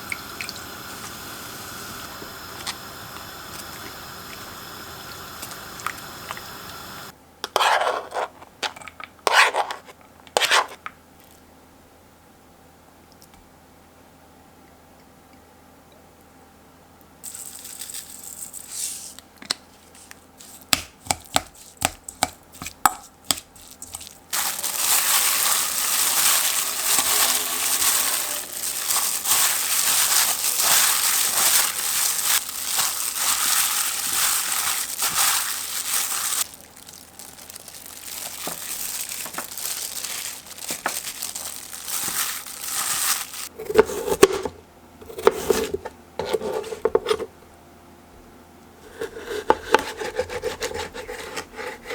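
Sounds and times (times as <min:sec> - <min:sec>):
leafy greens crinkling: 0:17.2 - 0:20.8, 0:21.5 - 0:43.6
rustling: 0:17.3 - 0:20.8, 0:21.5 - 0:43.5.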